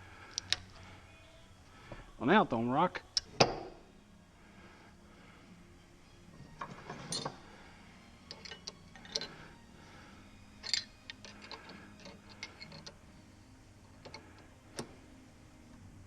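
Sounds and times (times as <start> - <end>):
metallic ratchet clicks: 10.6 - 13.0.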